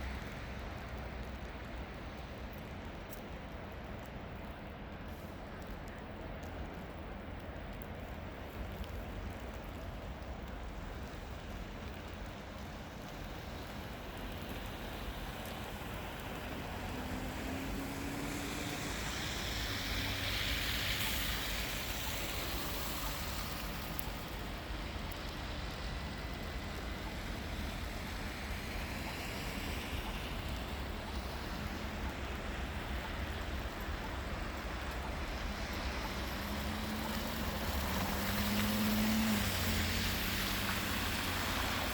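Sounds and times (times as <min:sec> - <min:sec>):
road traffic noise: 0:08.4 - 0:41.9
vehicle tyre noise passing: 0:12.8 - 0:41.9.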